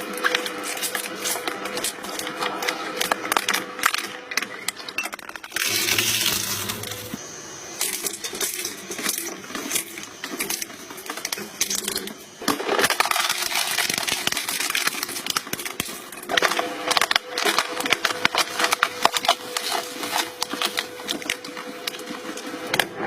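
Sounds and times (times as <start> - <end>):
crushing machine crackling and snapping: 0.0 - 7.2, 7.8 - 23.0.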